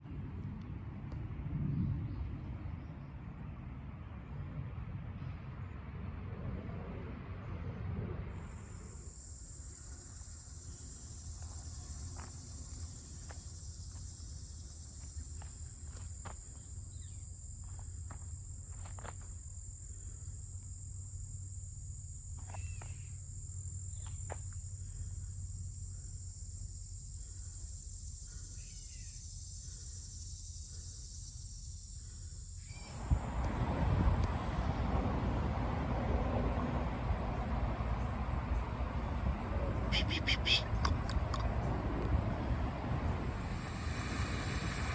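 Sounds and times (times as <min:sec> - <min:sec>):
insects droning: 0:06.4 - 0:44.9
bird chirps: 0:39.9 - 0:41.4
rush of noise: 0:43.0 - 0:44.9.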